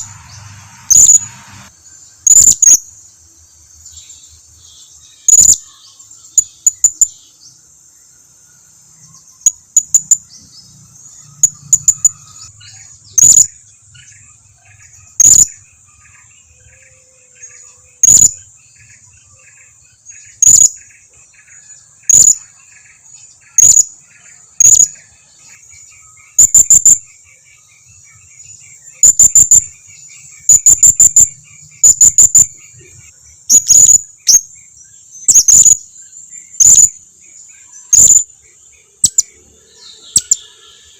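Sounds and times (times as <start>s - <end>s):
fast chirping: 0.0s - 1.3s, 2.2s - 2.9s, 5.2s - 7.2s, 9.4s - 15.7s, 18.0s - 18.9s, 20.2s - 21.0s, 22.0s - 25.1s, 26.2s - 27.4s, 28.4s - 40.5s
insect hiss: 0.0s - 40.9s.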